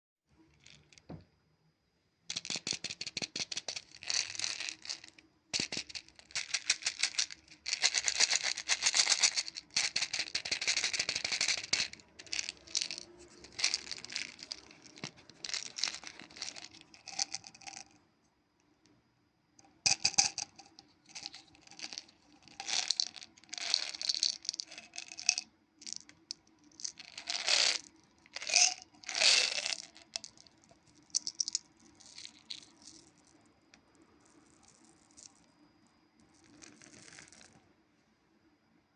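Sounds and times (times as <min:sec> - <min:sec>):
hard candies rattling together: 0:02.3 - 0:17.9, 0:19.9 - 0:33.2
crinkly plastic wrappers: 0:05.7 - 0:17.4.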